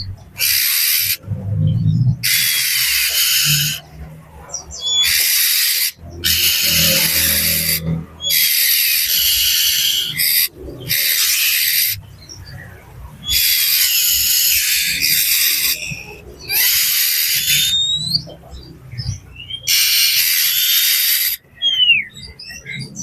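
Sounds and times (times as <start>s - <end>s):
bird giving harsh rasping calls: 0.0s - 23.0s.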